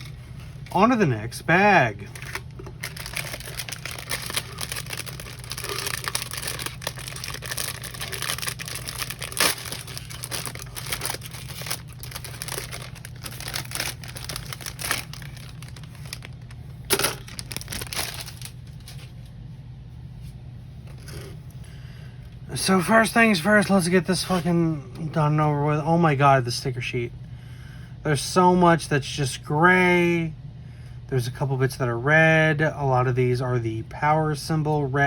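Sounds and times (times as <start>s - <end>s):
sharp plastic crackles: 2.0s - 19.1s
plastic bag tearing and crinkling: 2.1s - 19.1s.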